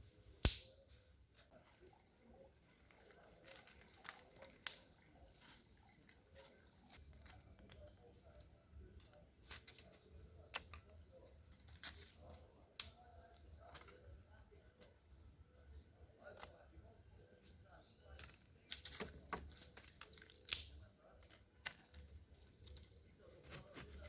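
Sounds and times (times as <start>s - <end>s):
twigs snapping: 0.4s - 0.8s, 3.2s - 14.0s, 17.3s - 24.0s
dry leaves rustling: 2.6s - 10.0s.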